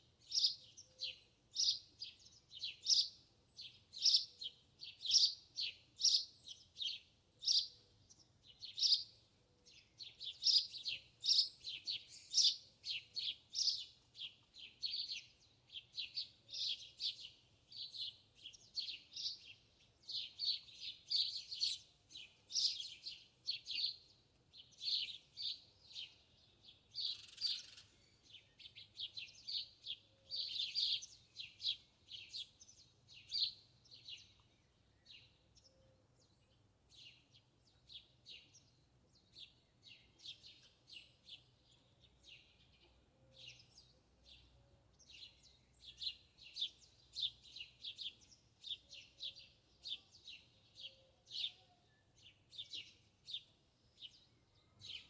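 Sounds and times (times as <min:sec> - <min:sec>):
small birds chirping: 0:00.1 - 0:55.0.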